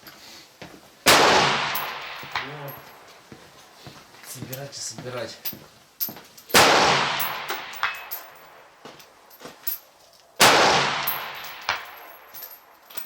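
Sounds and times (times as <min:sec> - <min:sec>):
rifle shots with rolling echo: 0:01.1 - 0:03.0, 0:06.5 - 0:08.6, 0:10.4 - 0:12.3.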